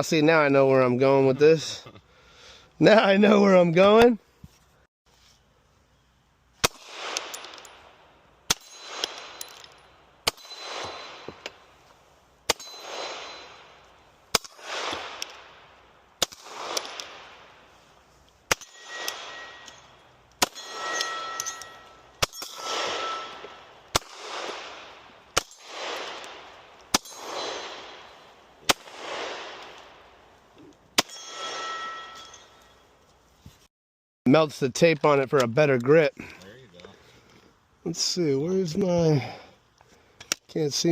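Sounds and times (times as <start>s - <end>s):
long rolling gunshot echo: 6.6s - 7.6s, 12.8s - 17.6s, 22.6s - 28.1s, 28.7s - 30.1s
single gunshots: 6.6s - 7.7s, 8.5s - 9.4s, 10.2s - 11.5s, 12.5s - 17.4s, 22.2s - 28.1s, 28.7s - 30.0s.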